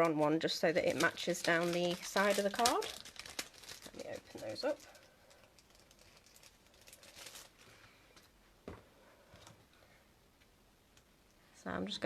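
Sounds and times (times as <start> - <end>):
packaging crinkling and rustling: 0.0 - 8.3.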